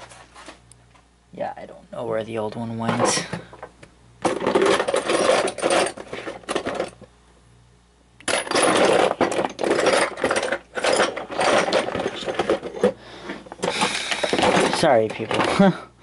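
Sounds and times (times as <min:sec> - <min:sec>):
metal tools rattling and clinking: 0:04.2 - 0:07.1, 0:08.3 - 0:13.0, 0:13.6 - 0:15.8.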